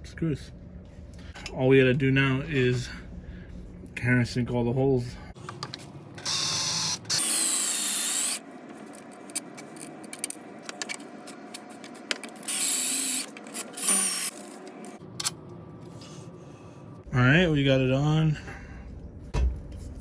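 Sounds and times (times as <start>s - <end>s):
power drill cutting steel: 6.3s - 8.4s, 12.5s - 14.3s.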